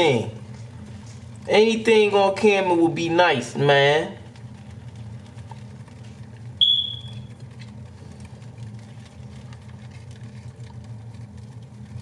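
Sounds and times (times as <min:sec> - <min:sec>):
steady low hum: 0:00.0 - 0:12.0
sharp high-pitched ping: 0:06.6 - 0:07.2.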